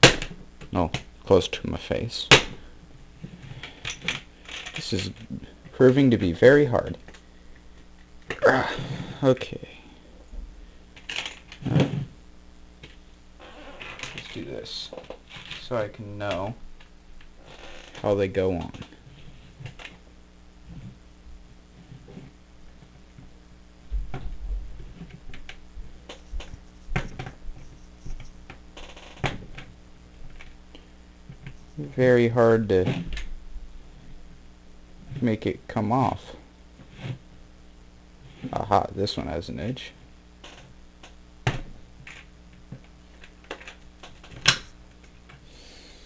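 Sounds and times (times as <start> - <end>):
sharp snaps of bricks: 0.0 - 0.3.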